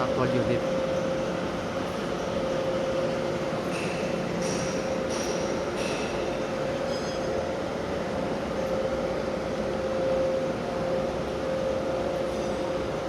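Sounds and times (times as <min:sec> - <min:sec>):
mechanical rumble with hum: 0:00.0 - 0:13.0.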